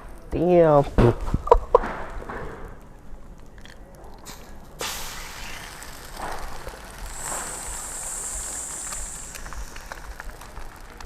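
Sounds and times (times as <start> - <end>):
egg sizzling on a griddle: 3.4 - 11.0
high hiss: 4.3 - 11.0.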